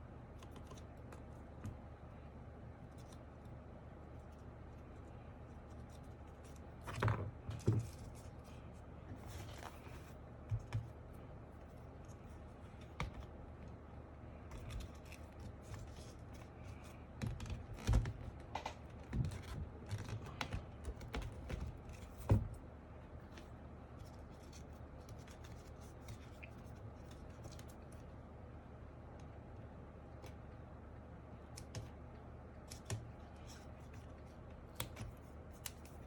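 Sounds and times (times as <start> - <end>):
parts and foam rustling: 4.2 - 13.3.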